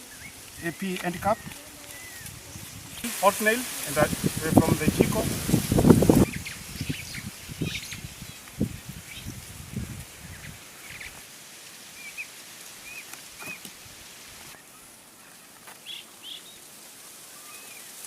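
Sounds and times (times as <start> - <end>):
small birds chirping: 0.0 - 3.1, 5.8 - 11.2, 11.9 - 13.7, 14.5 - 16.7
steady hiss: 0.0 - 18.0.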